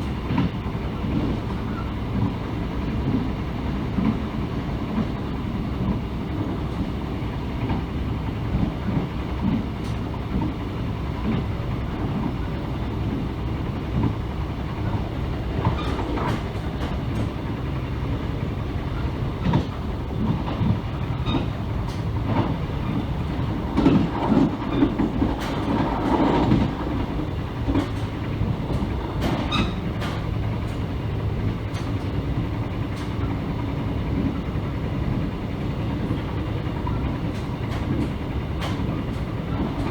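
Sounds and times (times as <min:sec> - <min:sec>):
train rumbling: 0:00.0 - 0:39.9
wheels clicking over rail: 0:14.8 - 0:17.8, 0:19.0 - 0:32.2, 0:35.9 - 0:39.9.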